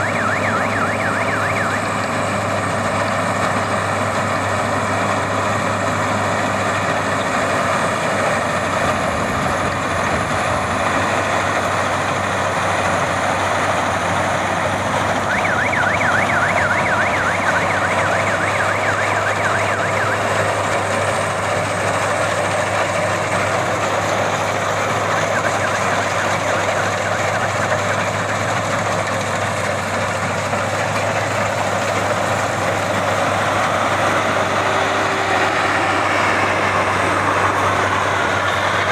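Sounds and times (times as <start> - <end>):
warbling siren-like tone: 0.0 - 2.2, 15.2 - 20.6, 24.8 - 28.2
combine harvester running: 0.0 - 38.9.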